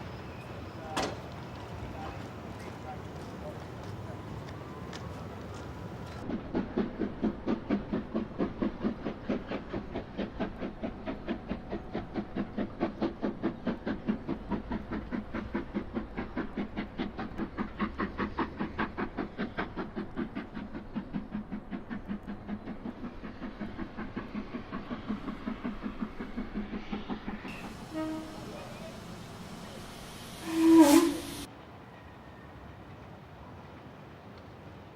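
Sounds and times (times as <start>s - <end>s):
model steam locomotive chuffing: 0.0s - 31.5s.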